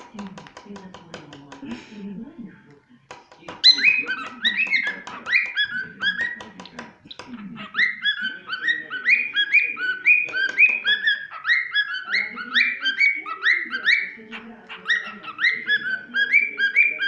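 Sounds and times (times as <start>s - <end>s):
beak tapping: 0.0s - 1.9s, 2.7s - 17.0s
cockatiel whistling: 3.6s - 6.5s, 7.1s - 17.0s.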